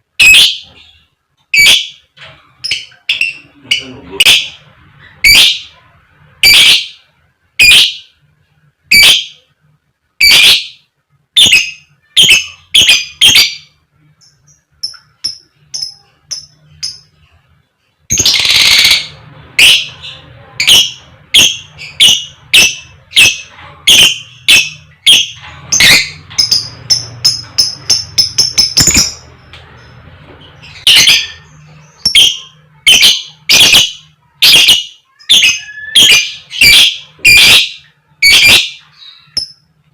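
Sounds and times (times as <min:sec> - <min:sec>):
lovebird sharp calls: 0:00.2 - 0:00.9, 0:20.6 - 0:29.2, 0:30.7 - 0:39.6.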